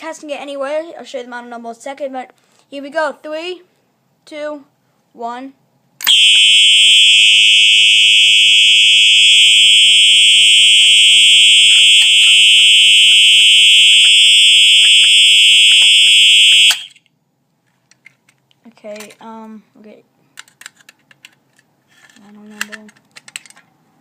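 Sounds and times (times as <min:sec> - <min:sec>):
fire alarm high-pitched tone: 0:06.1 - 0:17.0.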